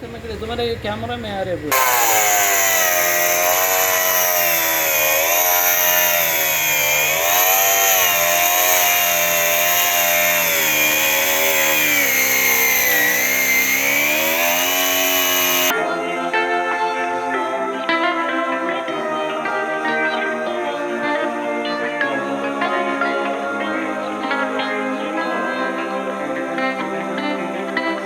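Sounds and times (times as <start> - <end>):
power tool cutting metal drum: 1.7 - 15.7.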